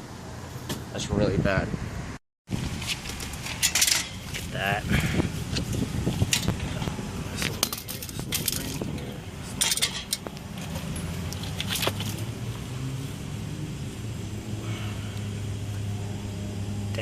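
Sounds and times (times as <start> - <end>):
metal tools clinking: 3.5 - 4.3, 7.4 - 12.3.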